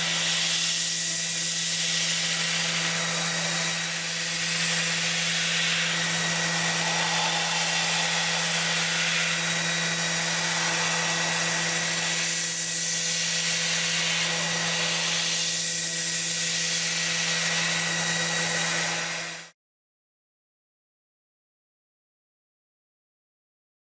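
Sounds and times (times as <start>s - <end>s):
even hiss: 0.0s - 15.5s
machine hum: 0.0s - 18.4s
faint whining tones: 2.7s - 13.9s.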